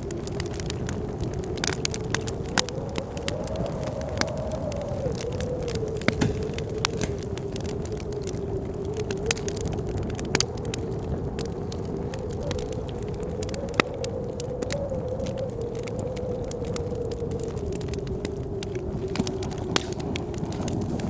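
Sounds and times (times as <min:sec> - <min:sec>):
howling blizzard wind: 0:00.0 - 0:21.0
wood fire crackling and popping: 0:00.0 - 0:21.0.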